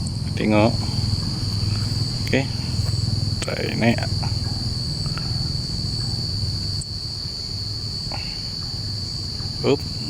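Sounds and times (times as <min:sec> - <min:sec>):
low rumble: 0:00.0 - 0:08.0
insects trilling: 0:00.0 - 0:10.0.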